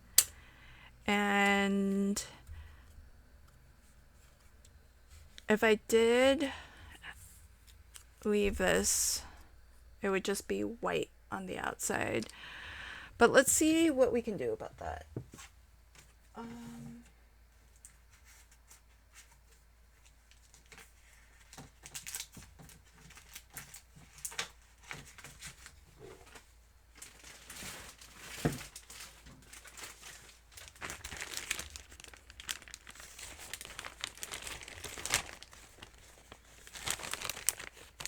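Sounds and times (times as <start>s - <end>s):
paper crinkling and rustling: 17.8s - 38.0s.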